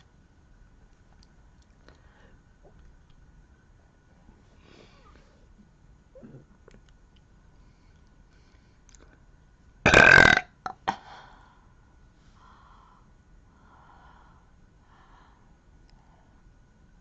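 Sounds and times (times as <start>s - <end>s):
girl burping: 9.9s - 11.0s.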